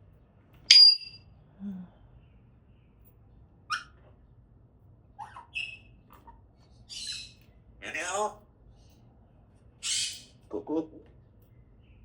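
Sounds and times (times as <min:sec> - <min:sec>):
parrot squawks and chirps: 0:00.7 - 0:01.2, 0:03.7 - 0:04.0, 0:05.2 - 0:07.4, 0:09.8 - 0:10.4.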